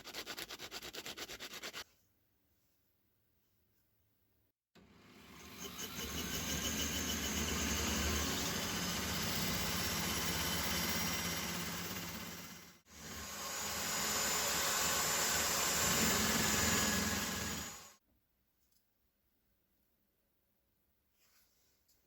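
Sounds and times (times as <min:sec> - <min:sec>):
small motor whirring: 0:05.2 - 0:18.0.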